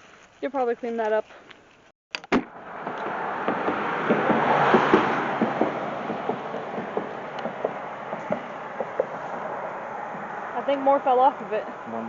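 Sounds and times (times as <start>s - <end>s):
vehicle tyre noise passing: 2.4s - 12.0s.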